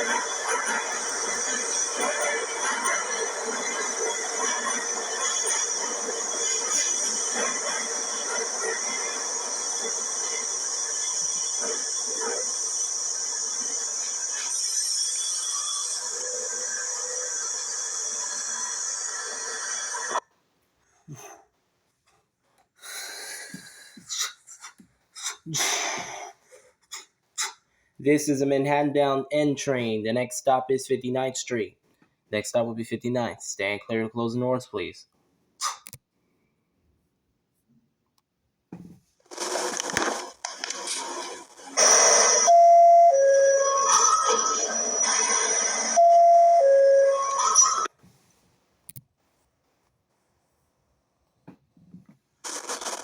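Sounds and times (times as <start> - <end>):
subway train hissing: 0.0 - 20.2, 40.7 - 47.9
breath-like sounds: 22.8 - 28.0.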